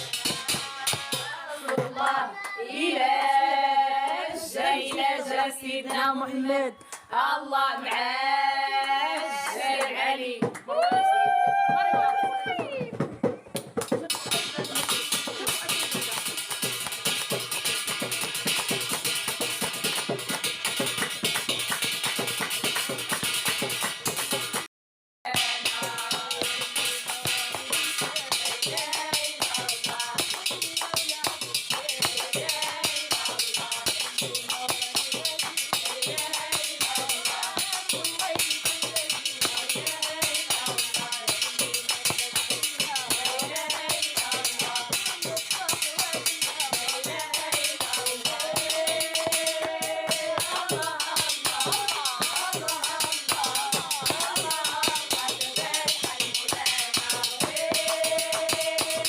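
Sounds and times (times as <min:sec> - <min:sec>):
hand drums beating: 0:00.0 - 0:02.2, 0:10.4 - 0:24.7, 0:25.3 - 0:59.0
voices singing praise song: 0:00.0 - 0:13.0, 0:14.0 - 0:24.3, 0:25.3 - 0:59.0
tambourines jingling: 0:25.6 - 0:59.0.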